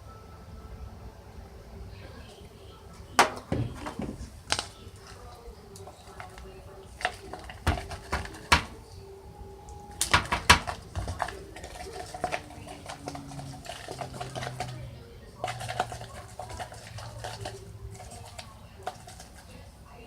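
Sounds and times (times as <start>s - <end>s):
faint background hum: 0.0s - 20.0s
utensil knocking against bowl: 7.0s - 8.8s, 10.0s - 14.8s.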